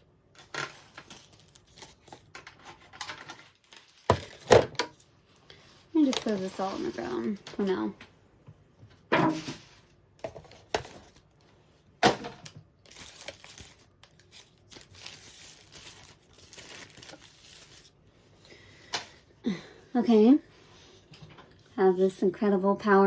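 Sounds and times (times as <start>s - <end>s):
wrapping rustling and crinkling: 0.4s - 7.9s, 9.4s - 19.2s
items knocking and clattering: 2.1s - 5.0s, 8.9s - 11.2s, 12.0s - 12.7s.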